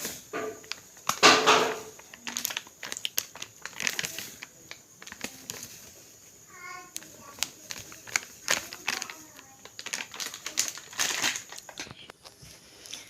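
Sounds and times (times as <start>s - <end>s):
rustling and crinkling: 0.0s - 13.0s.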